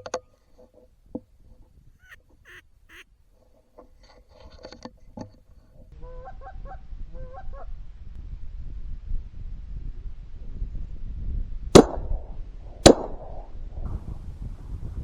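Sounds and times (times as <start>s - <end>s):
geese honking: 2.0s - 3.0s.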